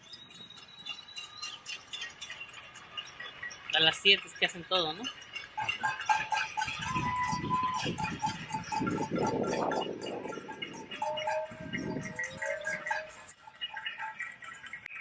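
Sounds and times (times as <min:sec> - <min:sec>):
rapid clapping and banging: 0:05.1 - 0:15.0
held whistle or horn tones: 0:06.5 - 0:13.4.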